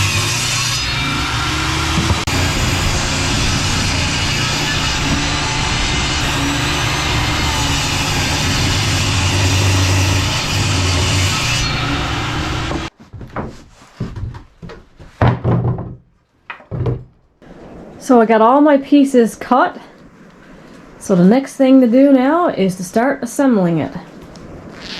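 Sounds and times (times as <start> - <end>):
table saw ripping wood: 0.0 - 12.9
wooden knocks and clatters: 13.0 - 17.8.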